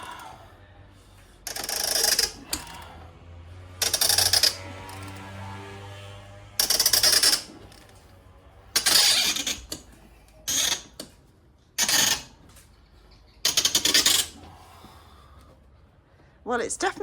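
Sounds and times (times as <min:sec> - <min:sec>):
bolt grating metal on metal: 0:01.5 - 0:02.8, 0:03.8 - 0:05.5, 0:06.6 - 0:07.9, 0:08.7 - 0:11.2, 0:11.8 - 0:12.4, 0:13.4 - 0:14.4.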